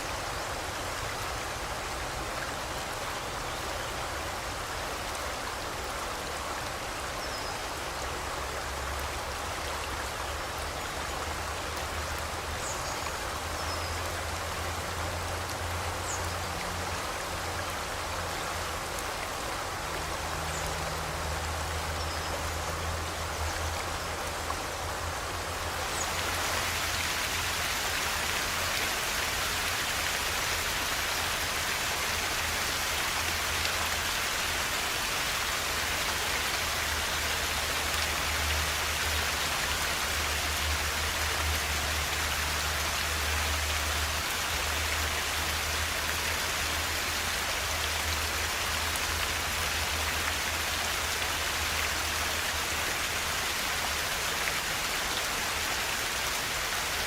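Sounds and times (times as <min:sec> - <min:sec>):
river water rushing: 0:00.0 - 0:57.0.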